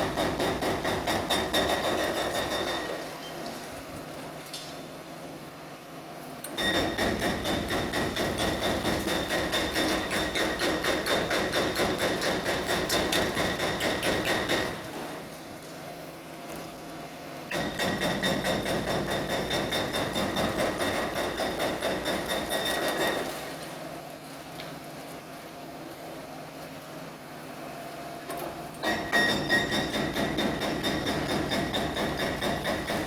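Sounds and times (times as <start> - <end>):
hydraulic breaker hammering concrete: 0.0 - 3.1, 6.6 - 15.2, 17.5 - 23.4, 28.8 - 33.0.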